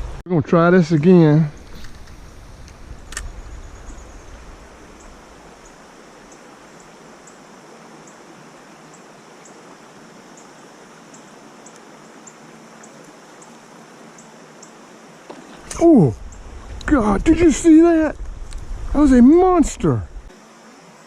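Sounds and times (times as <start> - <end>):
faint high ticks: 11.1 - 14.8, 18.2 - 18.7.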